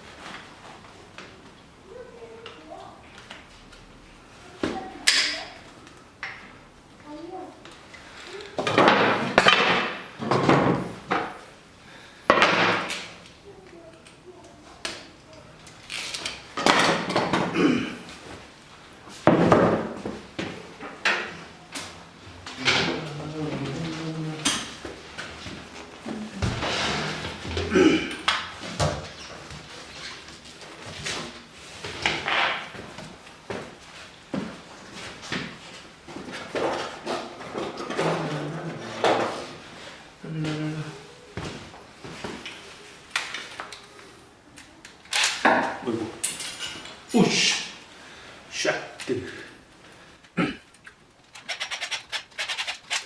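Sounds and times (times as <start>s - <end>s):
parts knocking and clattering: 8.6s - 11.4s, 50.7s - 53.0s.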